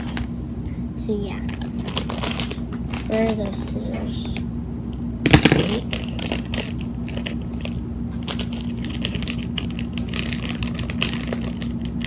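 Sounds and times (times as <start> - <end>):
plastic packaging crinkling: 1.5 - 3.4, 5.3 - 12.0.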